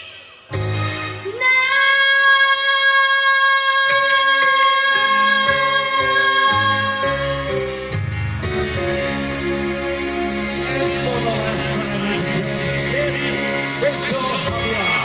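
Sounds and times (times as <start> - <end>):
woman singing a long high note: 0.6 - 7.5
backing accompaniment: 5.5 - 15.0.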